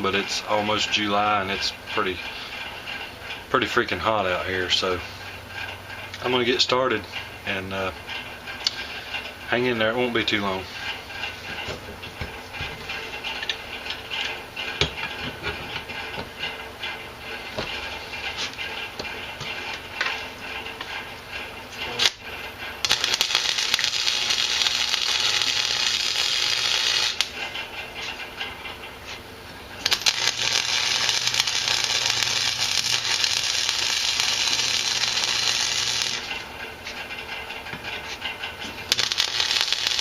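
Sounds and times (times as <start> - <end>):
fan running: 0.0 - 40.0
arc welding crackling hiss: 22.8 - 27.5, 29.8 - 36.4, 38.8 - 40.0.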